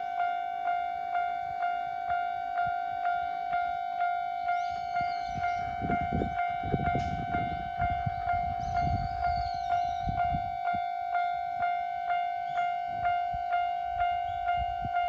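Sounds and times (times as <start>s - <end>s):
level crossing warning bell ringing: 0.0s - 15.0s
train wheels clattering rumble: 5.0s - 10.5s.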